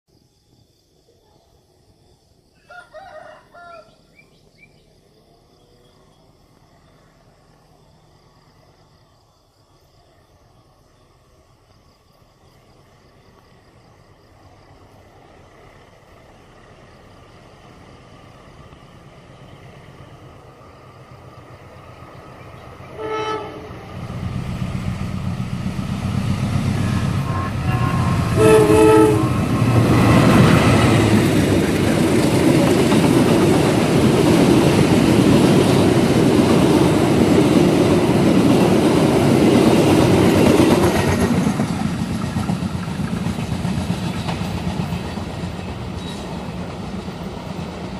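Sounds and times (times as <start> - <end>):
train passing: 3.0 - 47.9
train horn blast: 22.8 - 24.0, 26.7 - 30.7
train wheels clickety-clack: 28.1 - 47.9.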